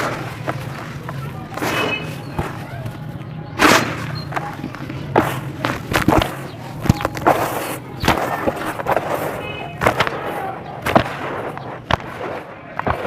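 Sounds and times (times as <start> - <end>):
blocks crushed by hand: 3.6 - 12.2.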